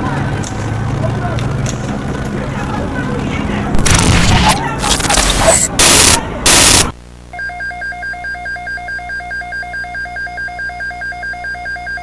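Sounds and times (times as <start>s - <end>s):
loud burst of noise: 3.7s - 7.0s.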